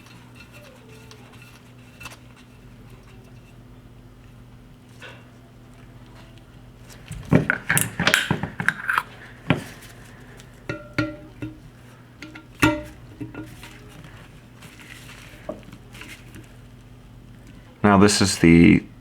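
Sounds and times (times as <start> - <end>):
metal parts clinking and knocking: 10.7 - 14.0.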